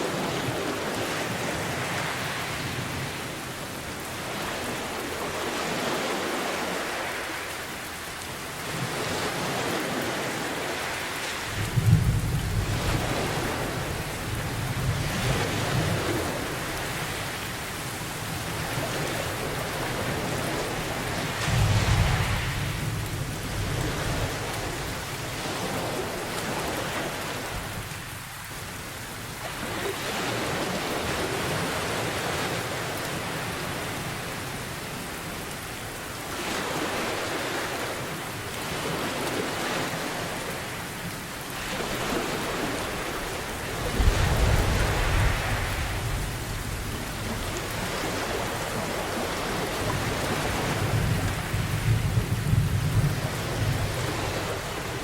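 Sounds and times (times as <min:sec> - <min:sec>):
rain pouring: 0:00.0 - 0:55.0
deep rumbling thunder: 0:21.5 - 0:24.5.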